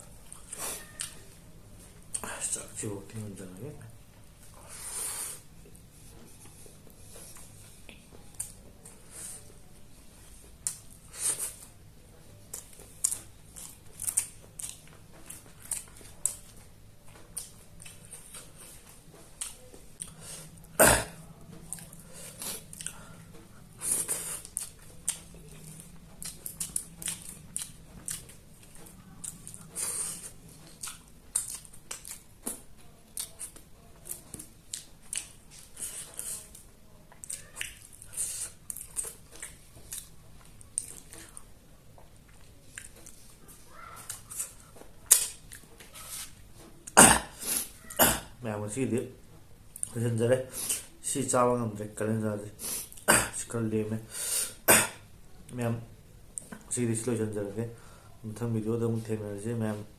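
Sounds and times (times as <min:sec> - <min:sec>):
person chewing and biting: 0:12.5 - 0:20.7, 0:21.7 - 0:41.5, 0:42.2 - 0:48.3.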